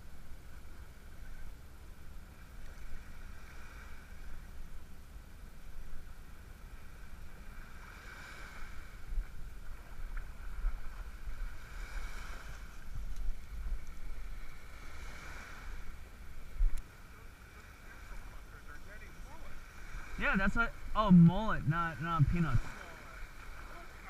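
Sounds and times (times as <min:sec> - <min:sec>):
wind rumbling on microphone: 0:05.6 - 0:17.1, 0:19.2 - 0:24.0
water washing at shore: 0:06.5 - 0:24.0.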